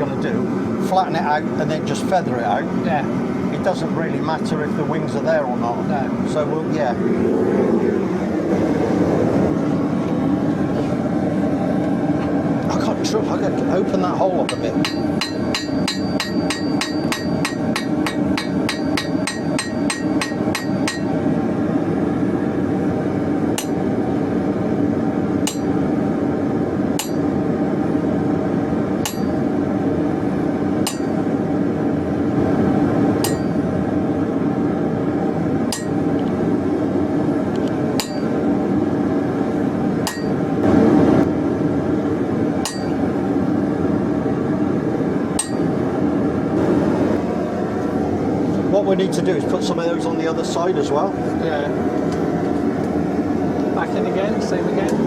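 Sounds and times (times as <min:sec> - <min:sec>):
steady low roar: 0:06.0 - 0:13.0
hammer striking steel on anvil: 0:14.5 - 0:21.2, 0:23.6 - 0:23.8, 0:25.4 - 0:25.8, 0:27.0 - 0:27.3, 0:29.0 - 0:29.4, 0:30.8 - 0:31.2, 0:33.2 - 0:33.6, 0:35.7 - 0:36.0, 0:38.0 - 0:38.3, 0:40.1 - 0:40.4, 0:42.6 - 0:43.0, 0:45.4 - 0:45.7.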